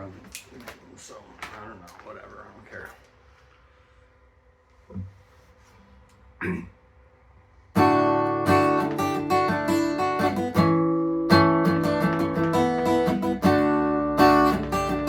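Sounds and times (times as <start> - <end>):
acoustic guitar strumming chords: 7.8 - 15.0.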